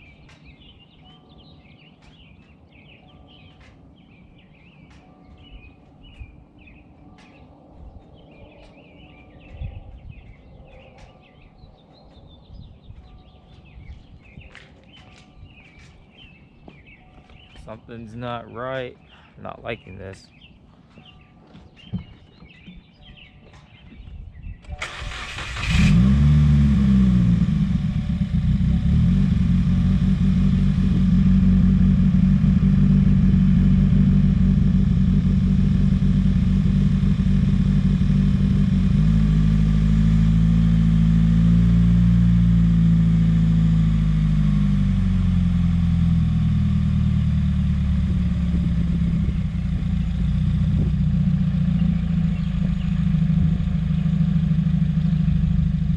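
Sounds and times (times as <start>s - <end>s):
car starter cranking: 24.7s - 26.9s.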